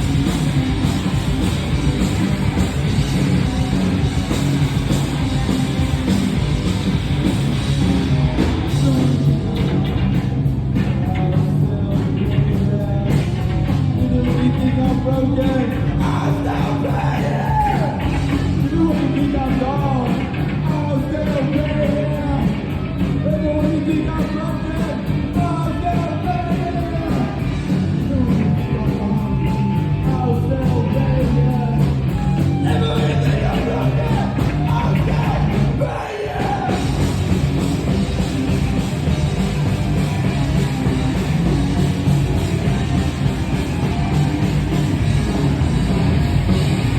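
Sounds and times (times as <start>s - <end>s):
live rock band playing: 0.0s - 46.9s
person singing: 23.2s - 37.0s.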